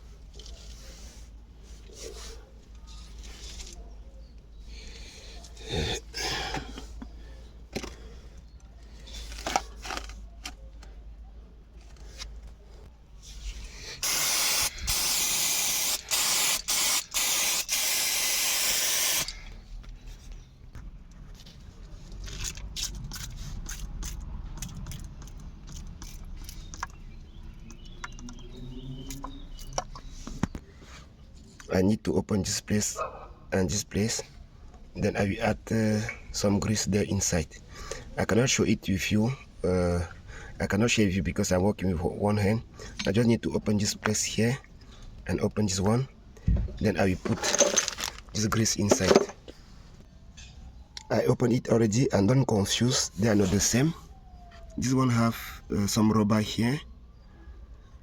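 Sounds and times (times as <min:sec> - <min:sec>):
aerosol spray can hissing: 0:14.0 - 0:19.3.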